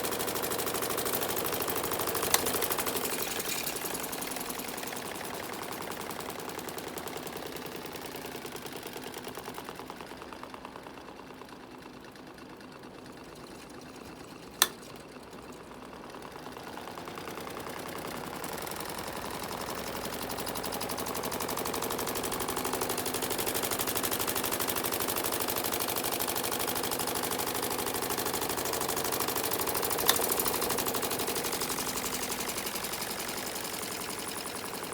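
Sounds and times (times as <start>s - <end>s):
sharp clicks: 1.4s - 3.7s.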